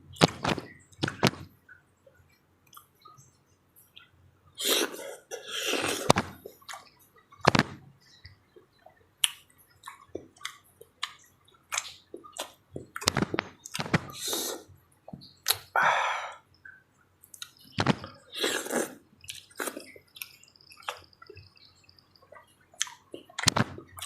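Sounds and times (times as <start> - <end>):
wet chewing and slurping: 4.6 - 7.4, 17.3 - 24.0.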